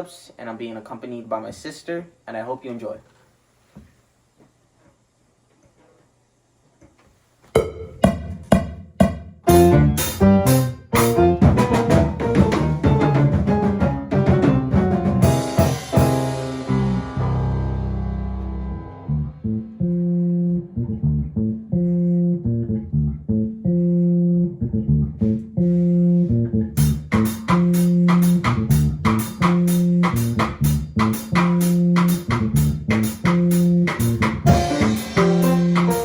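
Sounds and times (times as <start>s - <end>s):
sharp percussive strikes: 7.5s - 19.0s, 26.8s - 36.0s
bass guitar riff: 9.4s - 36.0s.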